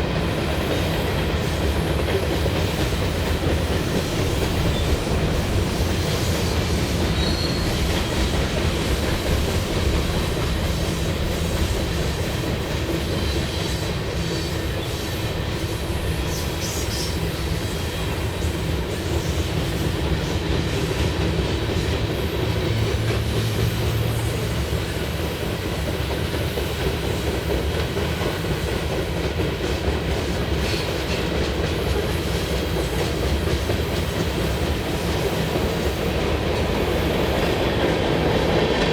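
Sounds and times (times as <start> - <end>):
train wheels rumbling and clattering: 0.0 - 38.9
wheel squeals: 6.5 - 8.3.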